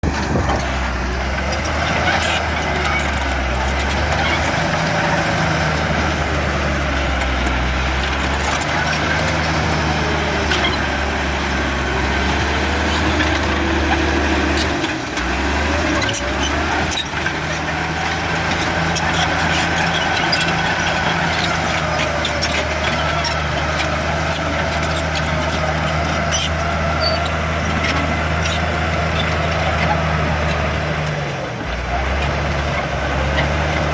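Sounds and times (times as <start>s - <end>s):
bulldozer diesel engine running: 0.0s - 33.9s
clicks and clanks: 11.7s - 31.2s.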